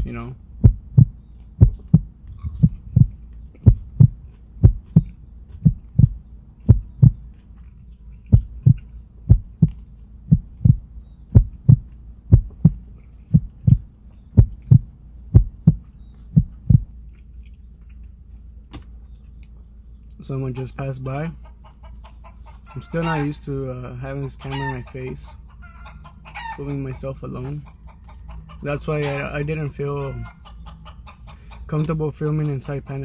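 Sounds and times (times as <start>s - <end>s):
low thumps in pairs: 0.0s - 7.2s, 8.3s - 16.9s
low steady hum: 0.0s - 33.0s.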